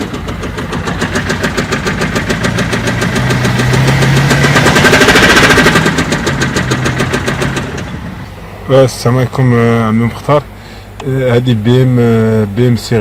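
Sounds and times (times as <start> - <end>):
diesel engine knocking: 0.0 - 8.2.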